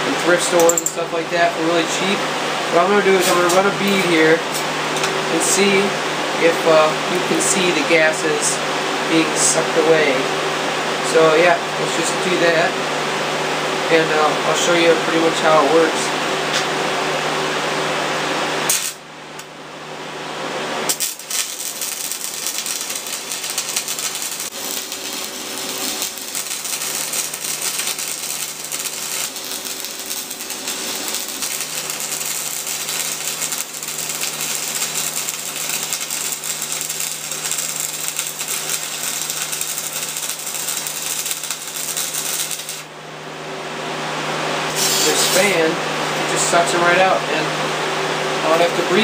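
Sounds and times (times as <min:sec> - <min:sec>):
electric fan humming: 0:00.0 - 0:49.0
welding arc crackling: 0:18.6 - 0:19.0, 0:20.7 - 0:42.9, 0:44.7 - 0:45.6.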